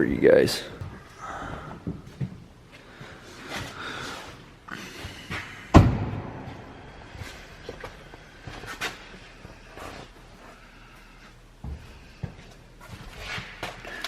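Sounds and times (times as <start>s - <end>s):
loud slam with ringing tail: 5.8s - 6.6s.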